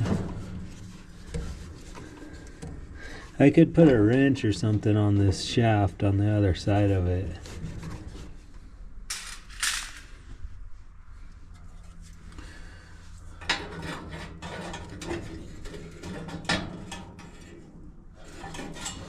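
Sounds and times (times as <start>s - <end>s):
low steady hum: 0.0s - 19.0s
metal and plastic parts clinking: 9.1s - 10.2s.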